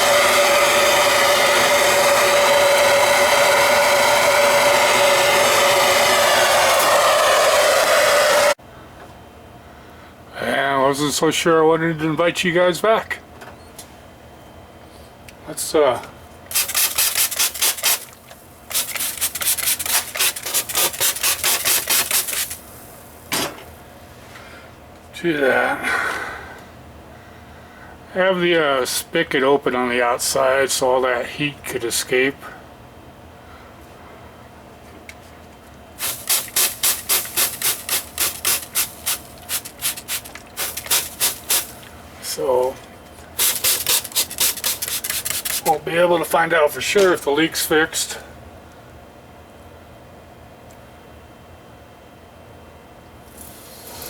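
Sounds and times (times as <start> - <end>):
abrasive scrubbing on pipe: 0.0 - 8.6, 18.7 - 22.6, 36.0 - 41.8, 43.4 - 45.8
rapid rubbing strokes: 36.0 - 41.8, 43.4 - 45.8.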